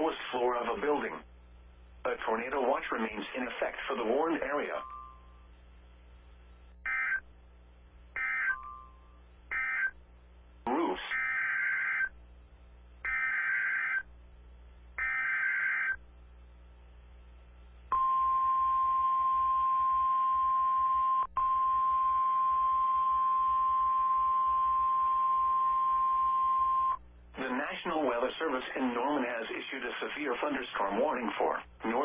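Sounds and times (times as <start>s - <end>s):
steady single-pitch alarm tone: 4.7s - 5.5s, 6.8s - 7.3s, 8.2s - 10.0s, 11.1s - 12.2s, 13.1s - 14.1s, 15.0s - 16.0s, 17.9s - 27.0s.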